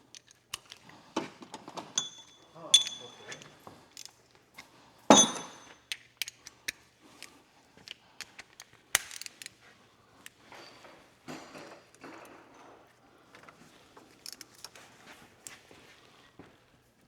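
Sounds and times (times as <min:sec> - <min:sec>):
metal tools clanking: 0:02.0 - 0:03.6, 0:05.1 - 0:05.8.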